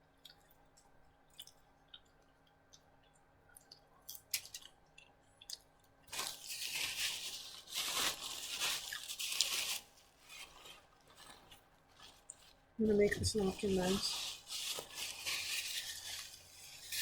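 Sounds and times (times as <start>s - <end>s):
paper crinkling: 6.1s - 17.0s.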